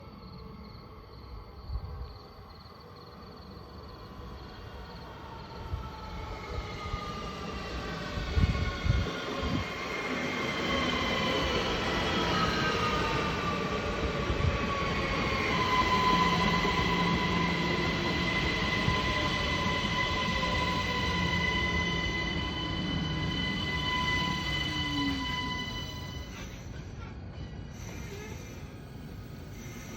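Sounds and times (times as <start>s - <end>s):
train brakes squealing: 4.2s - 29.9s.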